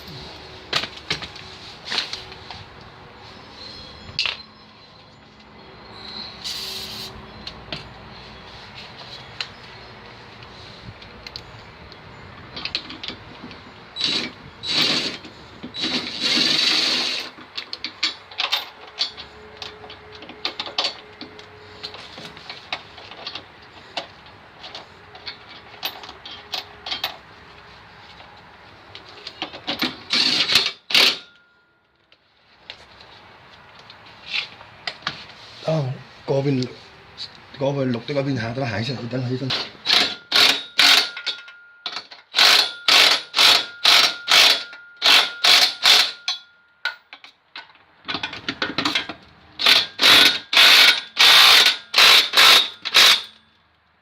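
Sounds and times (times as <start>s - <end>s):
metal tools clinking: 14.0s - 27.3s, 39.1s - 53.6s.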